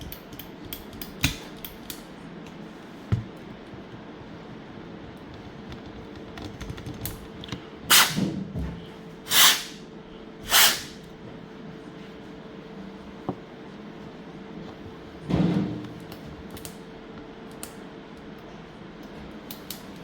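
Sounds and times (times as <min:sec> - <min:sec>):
air blower hissing puffs: 0:07.9 - 0:08.4, 0:09.3 - 0:09.8, 0:10.4 - 0:11.0.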